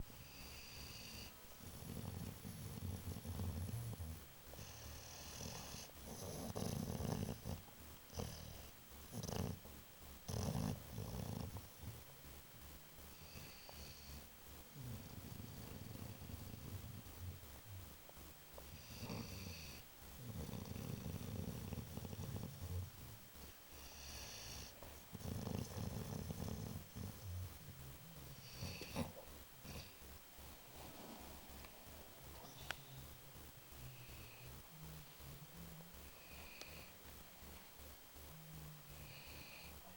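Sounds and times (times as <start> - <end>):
dog snoring: 0.0 - 12.1, 13.0 - 17.9, 18.6 - 37.6, 38.2 - 39.9.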